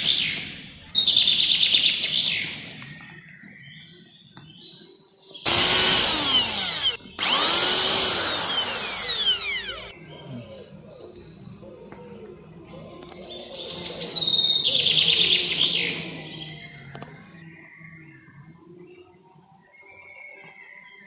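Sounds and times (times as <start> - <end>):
electric drill boring into coconut: 5.5 - 9.9.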